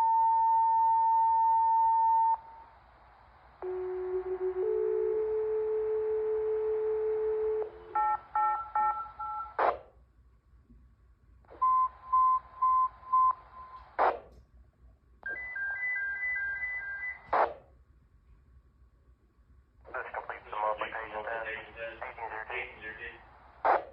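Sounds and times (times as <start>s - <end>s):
radio hiss: 19.9s - 23.9s.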